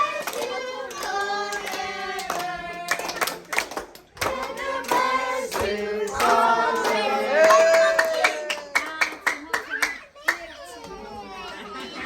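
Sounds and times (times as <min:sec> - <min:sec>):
group of voices singing: 0:00.0 - 0:03.6, 0:04.2 - 0:08.1
hands clapping: 0:00.2 - 0:11.0.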